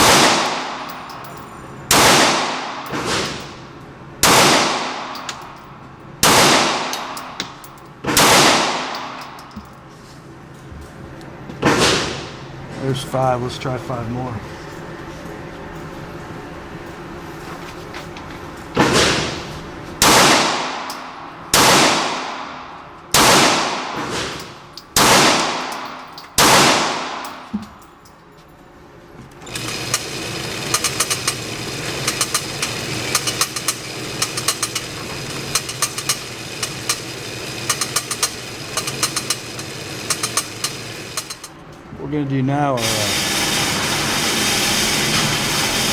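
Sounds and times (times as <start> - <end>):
pistol shots echoing: 0.0 - 1.0, 1.9 - 3.4, 4.2 - 5.3, 6.2 - 7.3, 8.1 - 9.2, 20.0 - 20.9, 21.5 - 24.4, 25.0 - 27.5.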